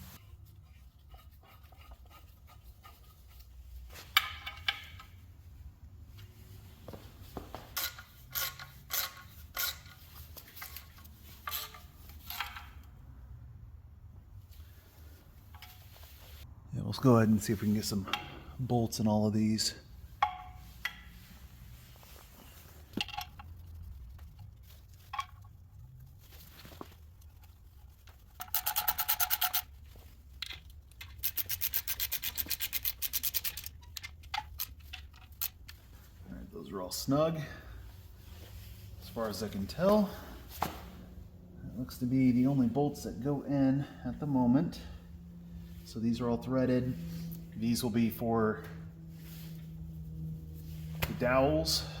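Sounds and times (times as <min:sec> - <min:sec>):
metal tools and bolts clinking: 0:04.0 - 0:05.3, 0:07.6 - 0:13.0, 0:28.3 - 0:29.8
hand ratchet clicking: 0:07.8 - 0:10.0, 0:28.4 - 0:29.7, 0:30.9 - 0:35.8.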